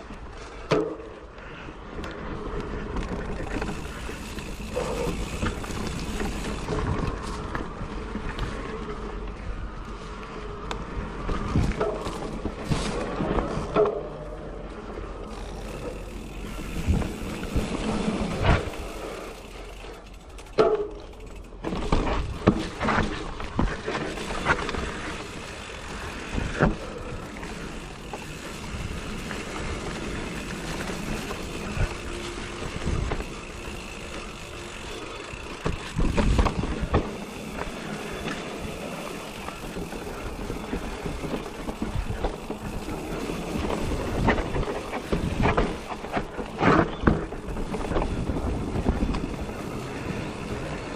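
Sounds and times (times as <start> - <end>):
bike tyres rolling on dirt: 0.0 - 50.9
bike knocks and rattles: 0.5 - 1.4, 2.5 - 8.6, 11.2 - 14.5, 15.2 - 50.9.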